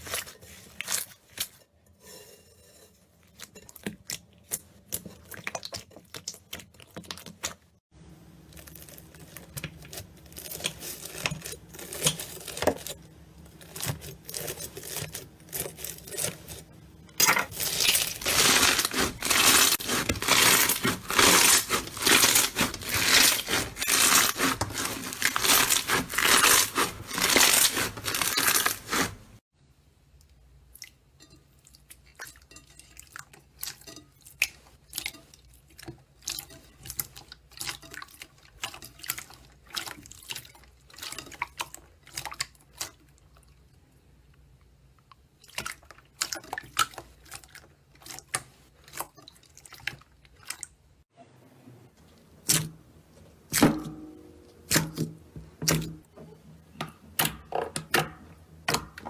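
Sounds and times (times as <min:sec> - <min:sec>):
slime crackling and popping: 0:17.5 - 0:29.2.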